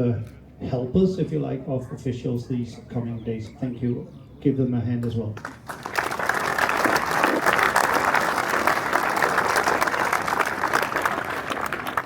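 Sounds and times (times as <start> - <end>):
audience applauding: 5.4 - 12.0.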